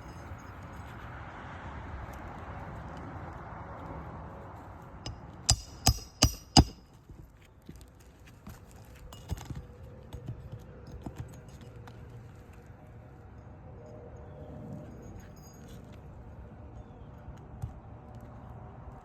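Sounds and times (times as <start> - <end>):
hammer striking metal: 5.1 - 6.8.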